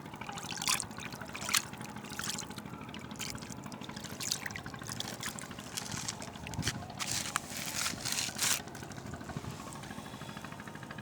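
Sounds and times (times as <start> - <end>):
small water splashes: 0.0 - 9.8
river water trickling and lapping: 0.0 - 10.8.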